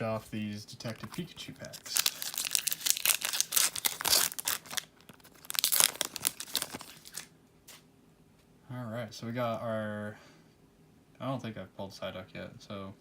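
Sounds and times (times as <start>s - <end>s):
foil pack tearing and crinkling: 0.9s - 7.3s.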